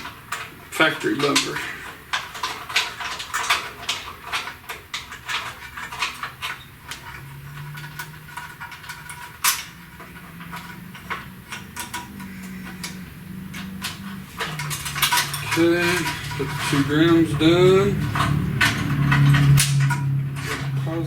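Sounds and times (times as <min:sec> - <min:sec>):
hand tools clicking and knocking: 0:00.0 - 0:21.0.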